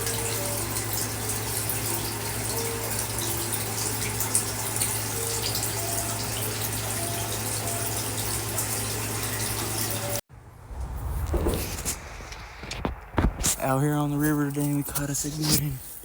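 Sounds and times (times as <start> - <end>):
constant low hum: 9.6 - 16.0.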